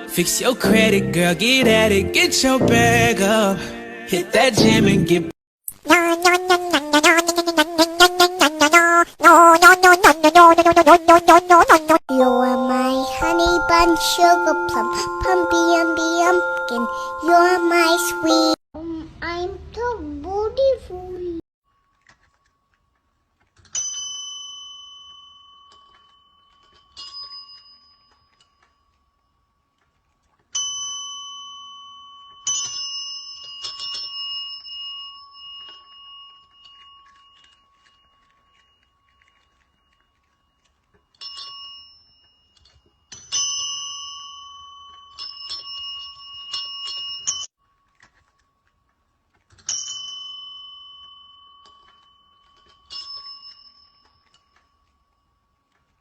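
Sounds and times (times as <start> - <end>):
small bell dinging: 21.8 - 29.6, 30.6 - 47.9, 49.6 - 55.6.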